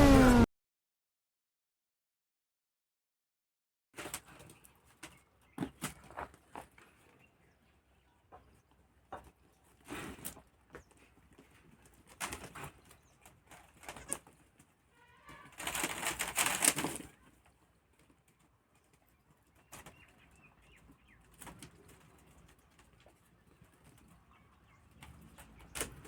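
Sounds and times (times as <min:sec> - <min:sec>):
birds flapping wings: 0:15.4 - 0:17.2
bird calls: 0:19.1 - 0:22.0.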